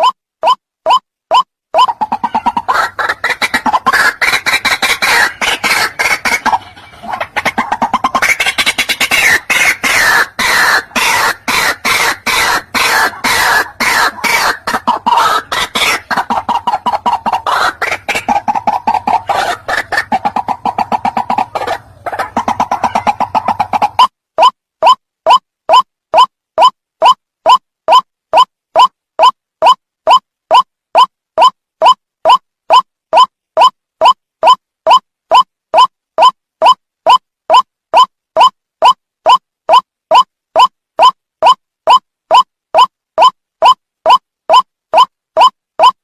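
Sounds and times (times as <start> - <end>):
bird croaking calls: 1.8 - 24.1.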